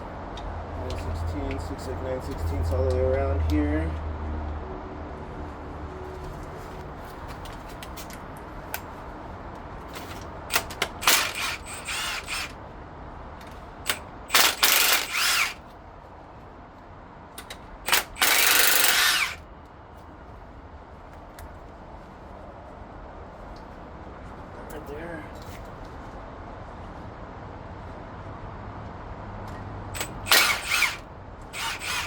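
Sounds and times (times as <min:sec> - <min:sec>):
tools clicking and knocking: 0:09.9 - 0:12.6, 0:13.4 - 0:15.6, 0:17.4 - 0:19.4, 0:30.0 - 0:31.0
power tool backing out bolts: 0:10.0 - 0:12.6, 0:13.9 - 0:15.6, 0:17.9 - 0:19.4, 0:30.0 - 0:32.0.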